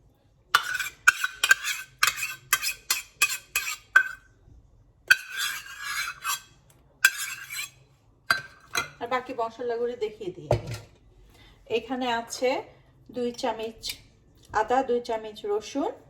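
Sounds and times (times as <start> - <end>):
spoon scraping a cup: 0.6 - 4.3, 5.1 - 9.0.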